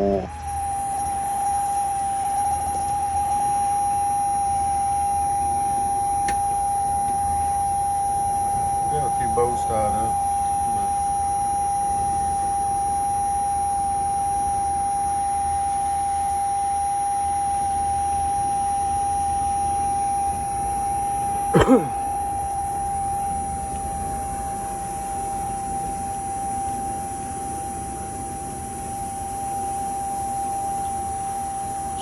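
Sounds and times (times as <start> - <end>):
high-pitched whine: 0.0 - 21.9.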